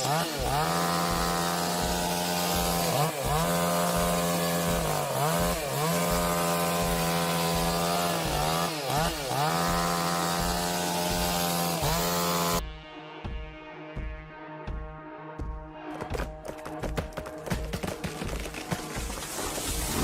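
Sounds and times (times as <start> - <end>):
chainsaw cutting wood: 0.0 - 12.6, 15.9 - 20.0.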